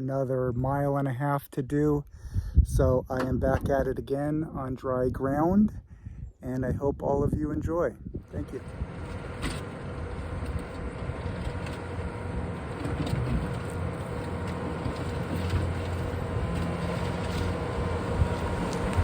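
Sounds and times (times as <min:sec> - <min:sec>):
skid steer engine running: 0:08.2 - 0:19.0.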